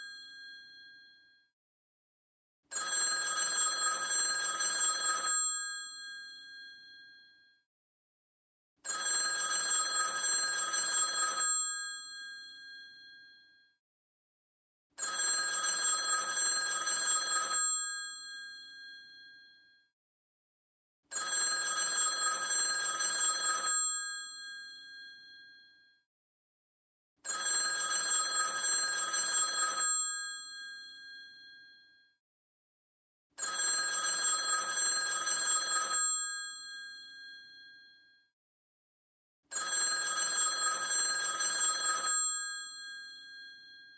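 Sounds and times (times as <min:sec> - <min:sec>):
telephone bell ringing: 0:00.0 - 0:01.4, 0:02.7 - 0:07.4, 0:08.8 - 0:13.5, 0:15.0 - 0:19.7, 0:21.1 - 0:25.8, 0:27.2 - 0:31.9, 0:33.4 - 0:38.0, 0:39.5 - 0:43.9.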